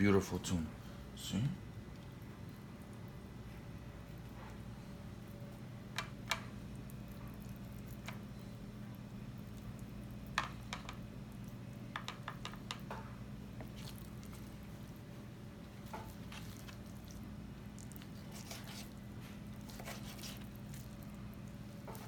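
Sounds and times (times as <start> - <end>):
steady low hum: 0.0 - 22.0
wet squishing of fish flesh: 1.8 - 11.9, 12.9 - 22.0.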